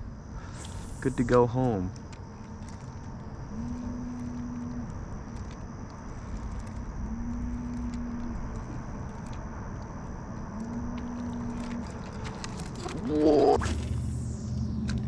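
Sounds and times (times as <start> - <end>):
high-pitched insect drone: 0.0 - 15.0
low hum-like tone: 0.0 - 15.0
low rumble: 0.0 - 15.0
faint ticks: 1.9 - 13.0.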